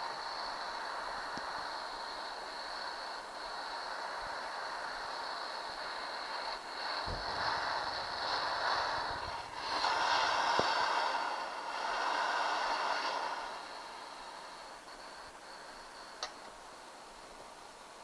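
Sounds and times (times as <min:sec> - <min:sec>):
gas torch hissing: 0:00.0 - 0:18.0
sharp click: 0:16.2 - 0:16.4.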